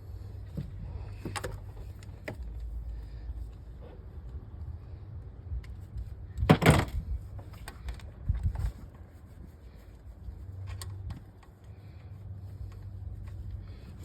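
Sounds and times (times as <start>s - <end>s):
small clicks and knocks: 10.6s - 13.5s.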